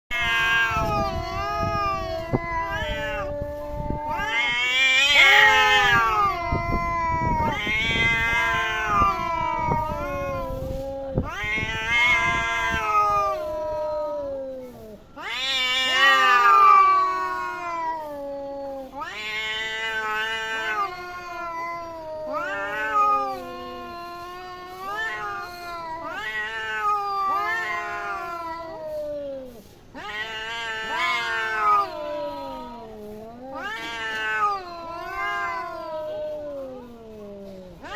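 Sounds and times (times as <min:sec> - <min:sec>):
cats yowling: 0:00.1 - 0:37.9.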